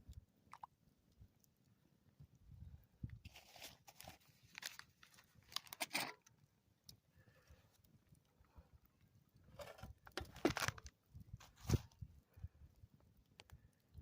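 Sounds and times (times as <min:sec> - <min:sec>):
crunching rustling noises: 0:03.2 - 0:06.3, 0:09.5 - 0:12.0.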